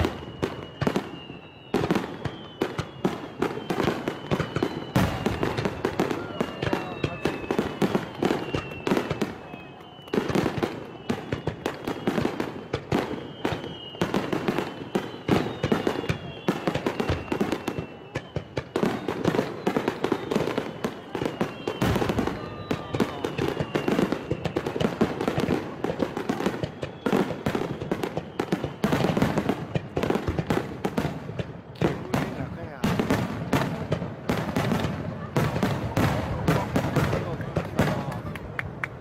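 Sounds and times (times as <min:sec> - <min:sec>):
firework whistles falling in pitch: 0:00.0 - 0:31.1
firework bangs: 0:00.0 - 0:39.0.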